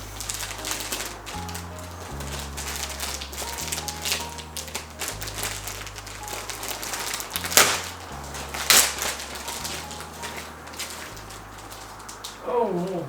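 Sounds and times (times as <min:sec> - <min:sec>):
loud plastic crinkles: 0:00.0 - 0:13.0
plastic bags rustling: 0:00.0 - 0:13.0.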